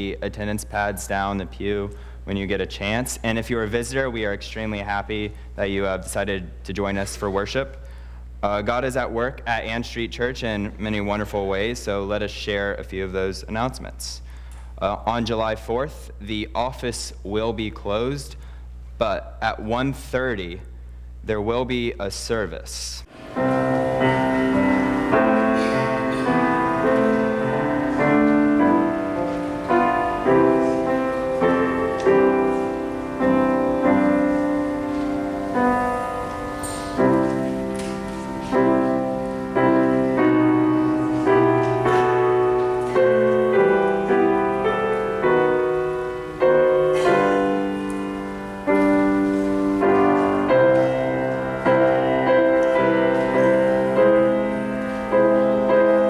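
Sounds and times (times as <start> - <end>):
slow piano chords: 0.0 - 7.4, 23.0 - 56.0.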